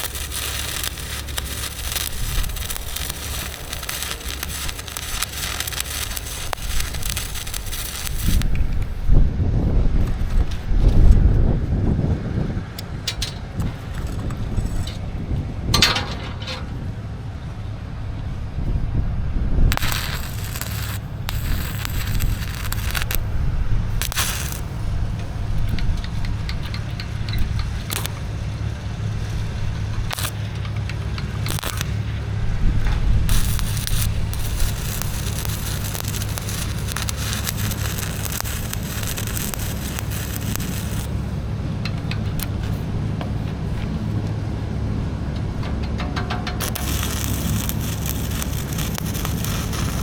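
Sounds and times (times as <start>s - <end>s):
scraping: 0.0s - 9.0s, 12.8s - 16.9s, 19.7s - 23.4s, 45.6s - 50.0s
welding arc crackling: 0.0s - 9.2s, 12.8s - 15.0s, 19.7s - 28.3s, 30.0s - 32.4s, 33.3s - 42.9s, 46.6s - 50.0s
steady low hum: 0.0s - 50.0s.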